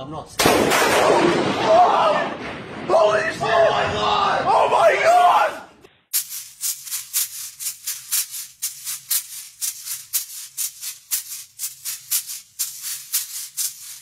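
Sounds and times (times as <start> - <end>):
hissy shaker percussion: 6.1 - 14.0.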